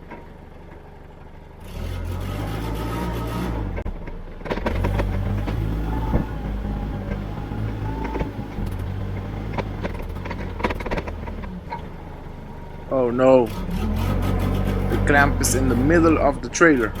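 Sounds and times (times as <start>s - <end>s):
vehicle engine running: 0.0s - 17.0s
clanks and knocks: 3.8s - 12.1s.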